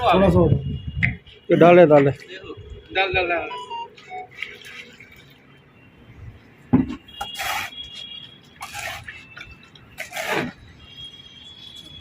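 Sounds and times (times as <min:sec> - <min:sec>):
liquid sloshing in a container: 0:04.0 - 0:05.6.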